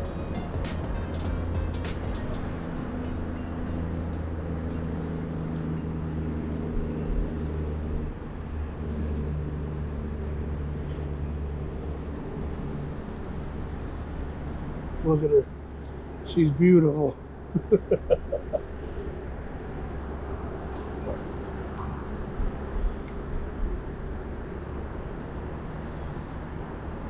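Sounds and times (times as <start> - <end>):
large engine droning: 0.0 - 16.6.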